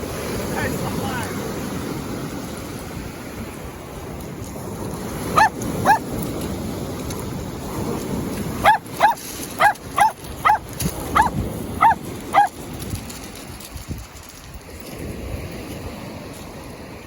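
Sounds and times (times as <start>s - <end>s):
surf: 0.0s - 17.0s
wind: 0.0s - 17.0s
small dog barking: 5.3s - 6.1s, 8.6s - 12.6s.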